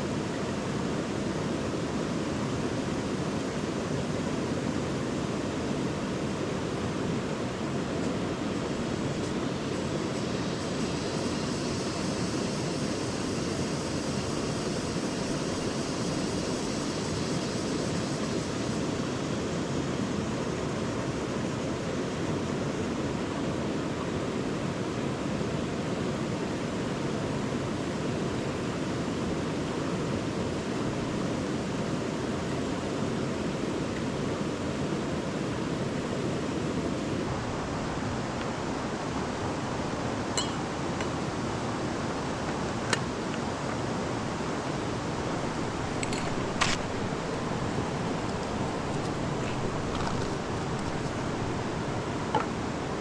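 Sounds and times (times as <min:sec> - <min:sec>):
river water rushing: 0:18.5 - 0:53.0.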